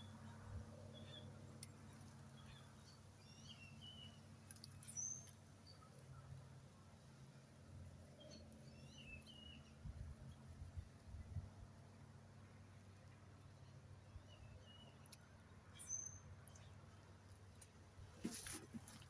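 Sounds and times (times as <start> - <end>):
songbird chirps: 0.0 - 19.0.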